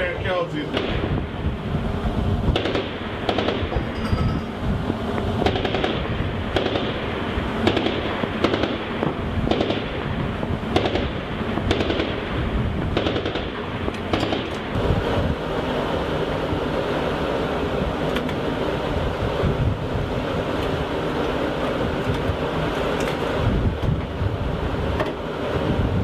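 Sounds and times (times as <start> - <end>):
wind rushing: 0.0 - 22.5
ship noise: 0.0 - 26.0
chain gun firing single shots: 0.7 - 1.1, 2.6 - 3.9, 5.4 - 7.0, 7.6 - 10.0, 10.7 - 12.2, 13.0 - 14.7.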